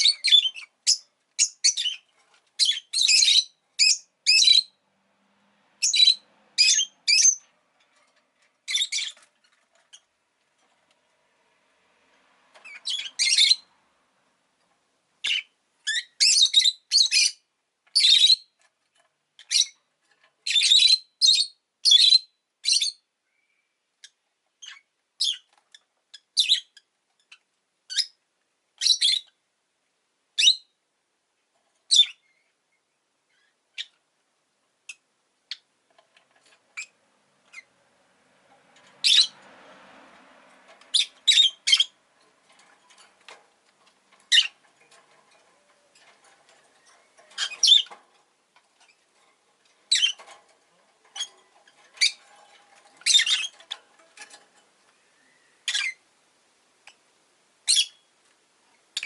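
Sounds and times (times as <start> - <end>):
lovebird chirping: 0.0 - 4.8, 5.8 - 7.5, 8.6 - 10.2, 12.6 - 13.7, 15.2 - 18.6, 19.4 - 19.8, 20.4 - 28.2, 28.8 - 29.4, 30.4 - 30.8, 31.9 - 32.5, 33.3 - 34.0, 36.8 - 37.7, 39.0 - 39.4, 40.9 - 42.0, 44.3 - 44.6, 46.6 - 48.0, 49.8 - 50.3, 51.1 - 52.3, 53.0 - 53.8, 55.0 - 56.0, 57.6 - 58.1.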